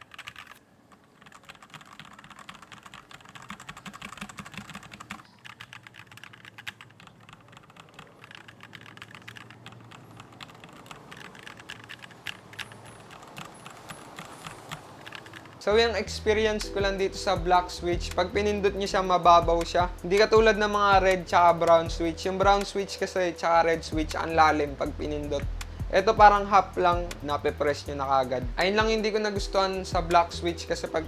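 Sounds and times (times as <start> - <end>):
mechanical keyboard typing: 0.0 - 15.7.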